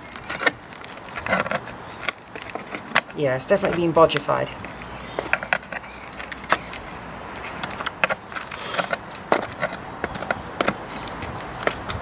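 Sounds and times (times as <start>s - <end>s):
scraping rasp: 4.6s - 12.0s.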